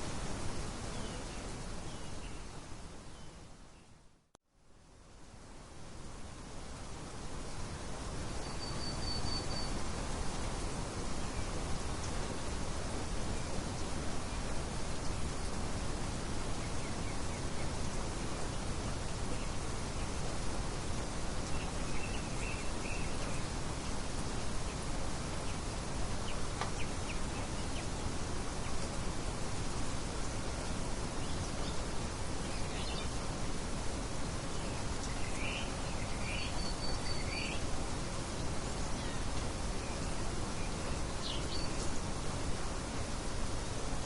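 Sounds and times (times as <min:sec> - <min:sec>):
wind hiss: 0:00.0 - 0:03.8, 0:04.7 - 0:44.0
bird chirps: 0:08.4 - 0:09.8, 0:35.0 - 0:37.6.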